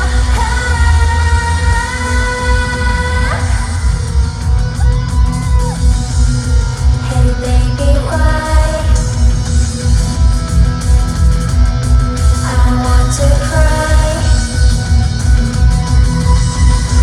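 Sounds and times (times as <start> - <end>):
person singing: 0.0 - 4.2, 7.0 - 9.1, 12.4 - 14.6
heavy pulsing beat: 0.0 - 17.0.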